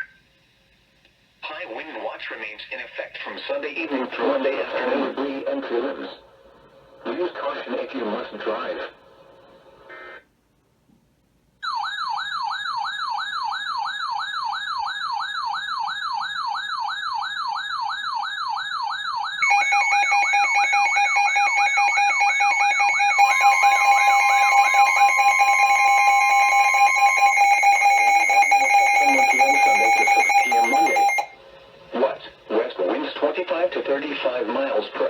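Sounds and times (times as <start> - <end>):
steady high alarm tones: 11.6 - 31.4
warbling siren-like tone: 19.3 - 31.3.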